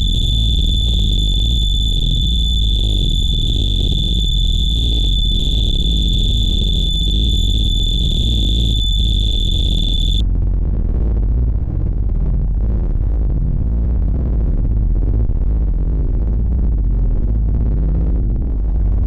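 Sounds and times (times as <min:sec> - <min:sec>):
harsh bass-heavy electronic noise: 0:00.0 - 0:10.2
piercing high tone: 0:00.0 - 0:10.2.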